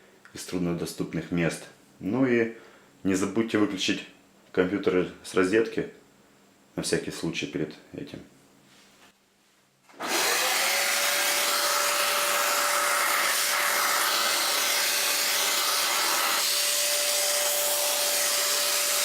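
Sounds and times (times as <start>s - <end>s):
vacuum cleaner whining: 9.9s - 19.0s.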